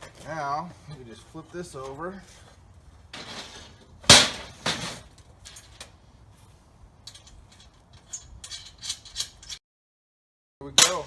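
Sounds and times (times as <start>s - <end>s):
steel plate clanking: 3.1s - 5.8s.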